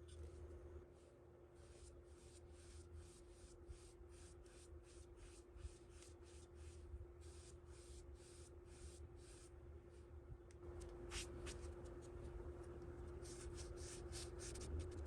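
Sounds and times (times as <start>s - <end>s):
low electrical hum: 0.0s - 15.0s
rubbing strokes on plastic: 1.6s - 9.5s, 13.1s - 15.0s.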